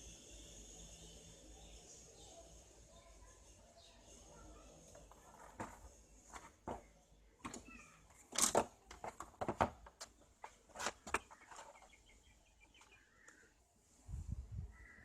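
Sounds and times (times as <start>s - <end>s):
faint bird chirps: 0.0s - 5.1s, 11.2s - 13.7s, 14.5s - 15.0s
sharp clicks and knocks: 5.1s - 12.0s.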